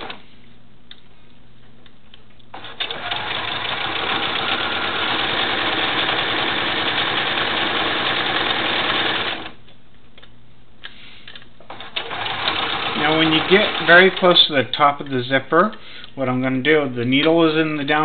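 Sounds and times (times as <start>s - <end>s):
sewing machine stitching rattle: 2.6s - 9.5s, 11.7s - 14.2s.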